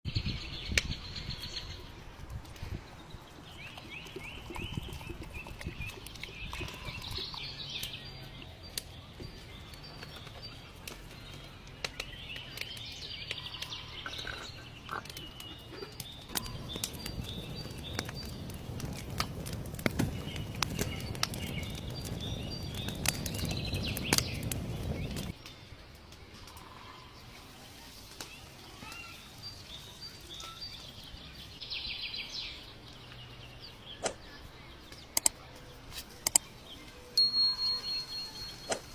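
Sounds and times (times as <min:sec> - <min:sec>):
small birds chirping: 0:00.1 - 0:38.9
sharp clicks: 0:34.9 - 0:35.4, 0:36.2 - 0:36.5.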